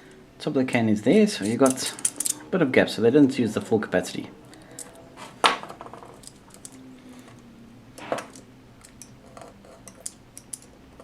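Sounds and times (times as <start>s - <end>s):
small clicks handling metal parts: 1.4s - 2.5s, 4.5s - 7.4s, 8.0s - 10.8s.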